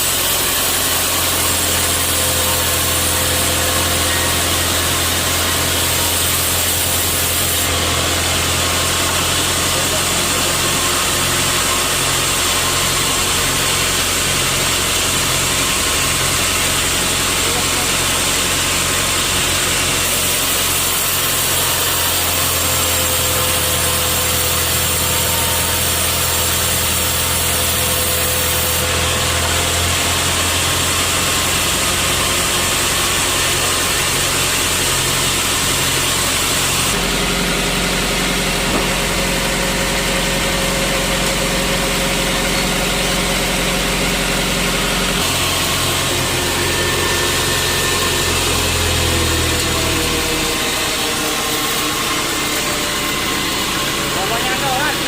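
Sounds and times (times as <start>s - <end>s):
sawmill machinery drone: 0.0s - 55.0s.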